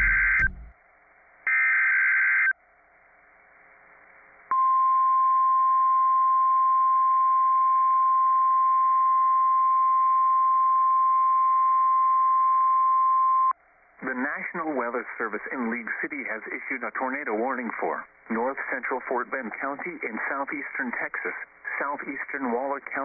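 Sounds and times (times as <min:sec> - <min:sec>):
buzzy digital data bursts: 0:00.0 - 0:00.7
steady warning alarm tone: 0:00.0 - 0:00.7.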